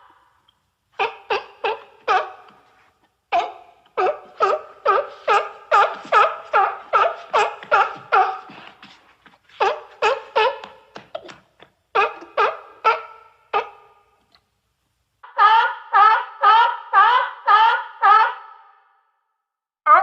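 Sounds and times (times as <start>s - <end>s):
seal barking: 1.0s - 2.6s, 3.3s - 8.8s.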